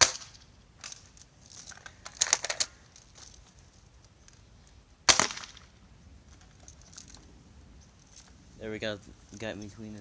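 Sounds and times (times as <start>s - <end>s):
airsoft rifle clicks and rattles: 0.2s - 4.4s.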